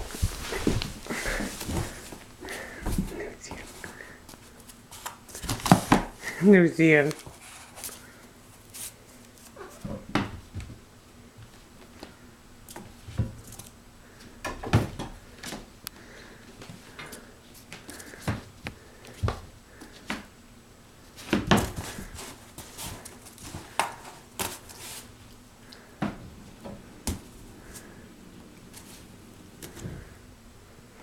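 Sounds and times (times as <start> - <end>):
cats playing knocks and scrapes: 0.0 - 4.0, 21.2 - 25.3.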